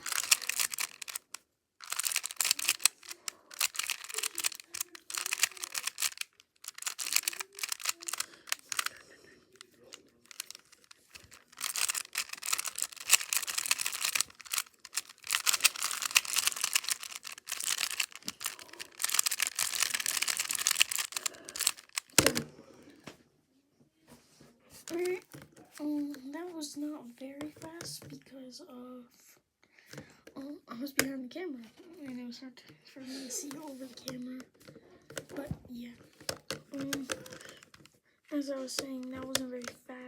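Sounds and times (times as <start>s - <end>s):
puzzle cube turning clicks: 0.0s - 22.5s, 24.8s - 25.4s, 36.1s - 37.9s.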